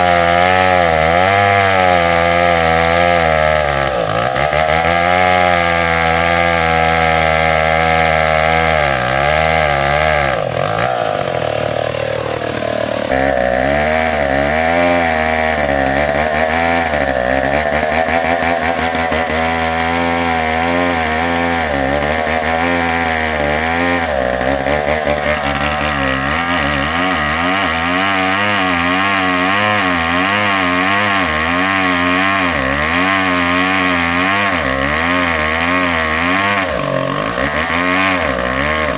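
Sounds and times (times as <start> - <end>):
chainsaw cutting wood: 0.0 - 38.9.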